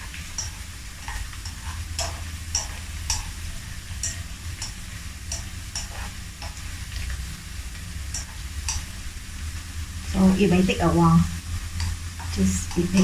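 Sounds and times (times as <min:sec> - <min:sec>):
chopsticks clicking against wok: 0:00.0 - 0:09.0, 0:11.6 - 0:13.0
fish sizzling in a wok: 0:00.0 - 0:13.0.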